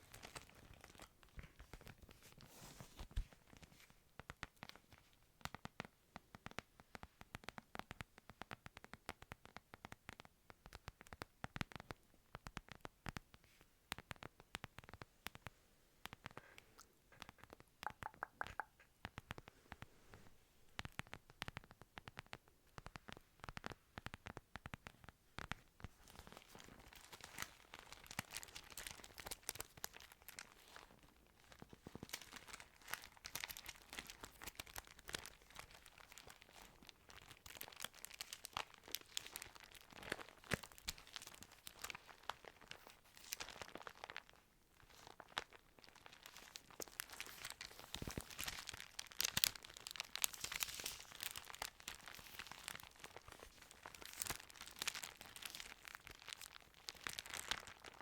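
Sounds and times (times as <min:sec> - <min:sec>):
thin pages crinkling and rustling: 0:00.0 - 0:05.2, 0:24.2 - 0:58.0.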